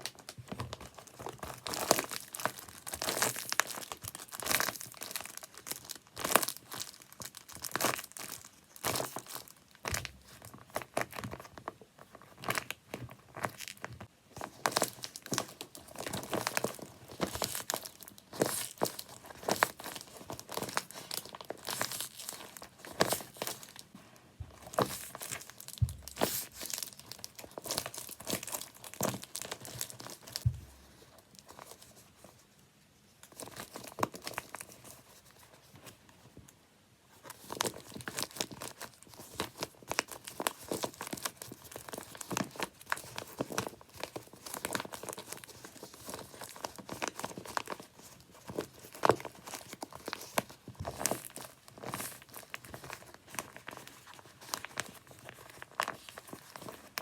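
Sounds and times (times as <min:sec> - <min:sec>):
taped paper crinkling: 0:24.5 - 0:30.8, 0:37.2 - 0:57.0.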